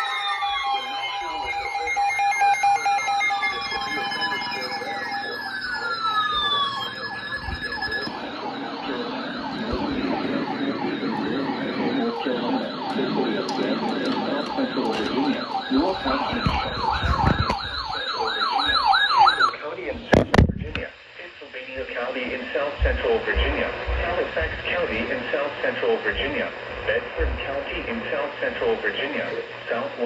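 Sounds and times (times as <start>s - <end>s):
falling alert tone sweeps: 0.0s - 14.3s
steady alert beeps: 0.0s - 20.7s
electronic siren sweeping: 0.0s - 20.8s, 22.8s - 30.0s.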